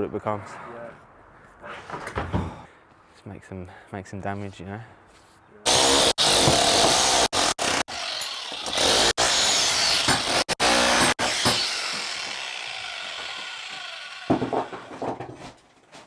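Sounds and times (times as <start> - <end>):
electric jackhammer running: 5.7 - 14.4
knocks: 14.3 - 15.6.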